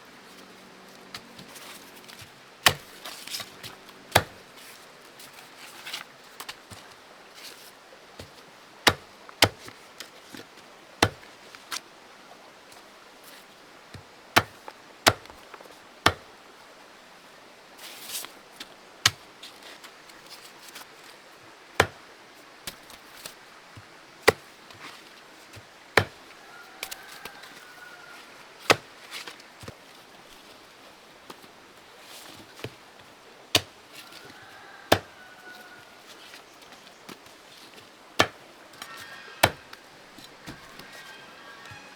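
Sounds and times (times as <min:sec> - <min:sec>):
blade chopping wood: 0:02.6 - 0:04.5, 0:08.9 - 0:09.8, 0:11.0 - 0:11.3, 0:14.0 - 0:16.3, 0:21.8 - 0:22.0, 0:24.2 - 0:24.5, 0:25.6 - 0:26.2, 0:28.7 - 0:28.9, 0:33.5 - 0:33.8, 0:34.9 - 0:35.2, 0:38.2 - 0:40.8.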